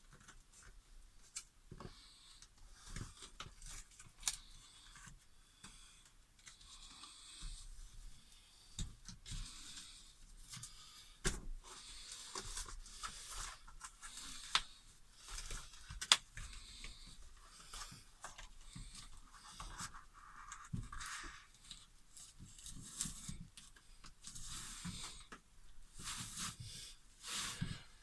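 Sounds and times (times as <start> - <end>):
insulation rustling and scraping: 6.4 - 28.0.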